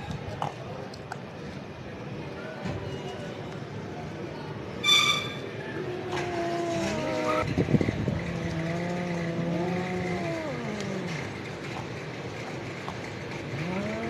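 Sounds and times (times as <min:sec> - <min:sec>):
cat growling and yowling: 0:05.7 - 0:11.5, 0:13.5 - 0:14.0.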